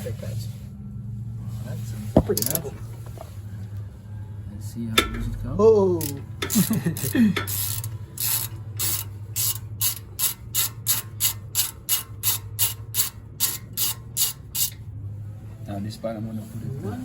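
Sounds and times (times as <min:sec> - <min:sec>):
socket ratchet clicking: 0:06.0 - 0:14.8.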